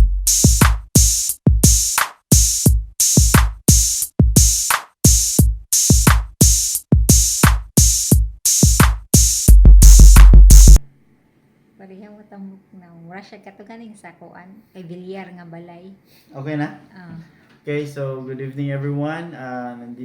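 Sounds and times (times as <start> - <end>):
heavy deep bass: 0.0 - 0.6, 9.5 - 10.8
electronic music with drum-machine beat: 0.0 - 10.8.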